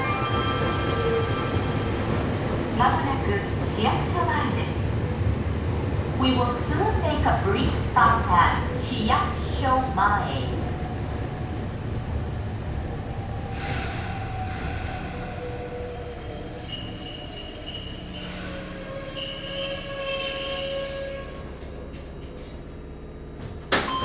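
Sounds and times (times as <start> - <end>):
train running rumble: 0.0 - 24.0
wheel squeal: 12.2 - 22.0.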